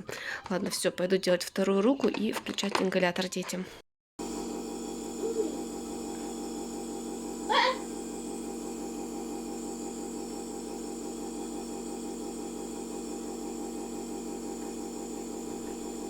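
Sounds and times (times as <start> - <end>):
electric motor humming: 4.2 - 16.0.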